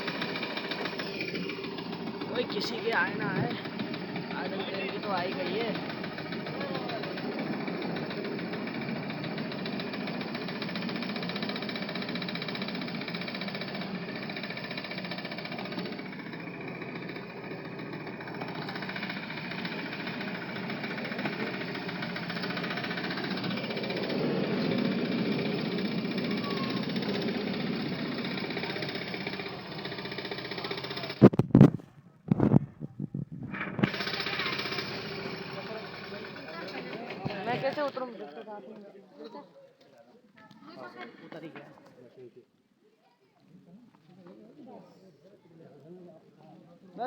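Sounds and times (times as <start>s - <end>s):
miniature train rumbling and rattling: 0.0s - 31.5s, 32.3s - 38.1s.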